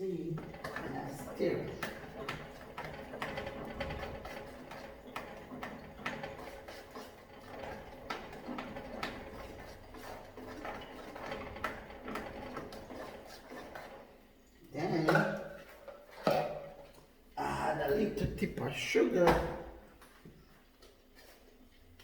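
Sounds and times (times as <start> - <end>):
spoon scraping and knocking pot: 0.4 - 14.1.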